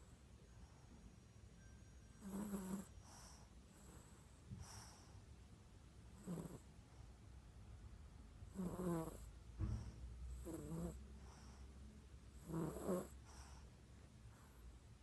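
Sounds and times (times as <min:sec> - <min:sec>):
low thump: 0:09.6 - 0:10.0.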